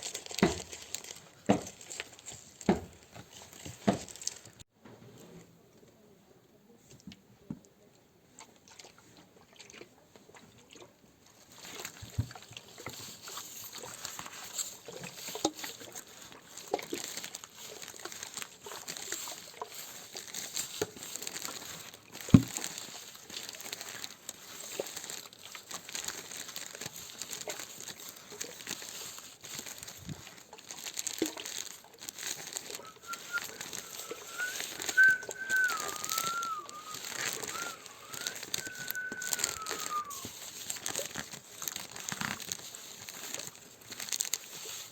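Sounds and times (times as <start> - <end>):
high hiss with crackles and taps: 11.4 - 44.9
wavering whistle imitating bird: 32.7 - 40.3.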